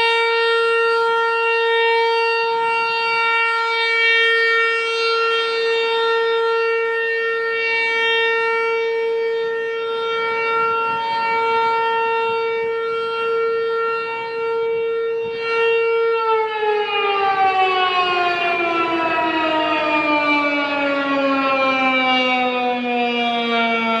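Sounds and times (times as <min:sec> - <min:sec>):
warning siren winding down: 0:00.0 - 0:24.0.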